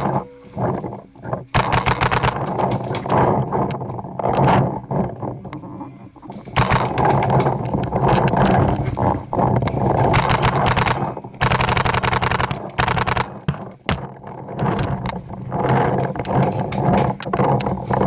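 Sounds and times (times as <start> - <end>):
paintball markers firing: 1.5 - 3.2, 6.6 - 7.6, 10.1 - 14.1.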